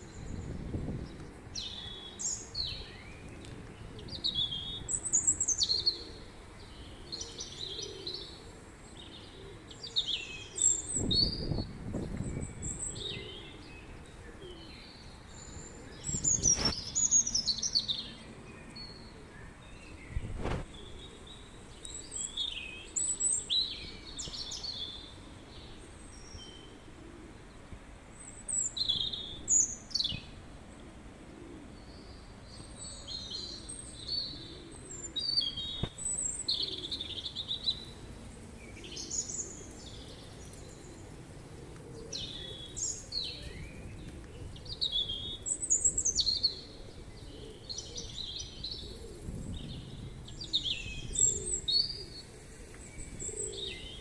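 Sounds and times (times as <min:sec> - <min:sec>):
small birds chirping: 0:00.0 - 0:26.8.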